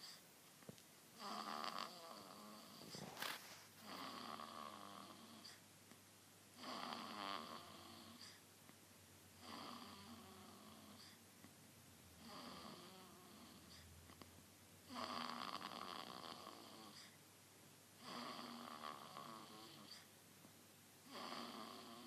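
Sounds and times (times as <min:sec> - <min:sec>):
baby snoring: 0:01.2 - 0:05.6, 0:06.6 - 0:08.4, 0:09.4 - 0:11.2, 0:12.2 - 0:14.2, 0:14.8 - 0:17.2, 0:18.0 - 0:20.1, 0:21.0 - 0:22.0.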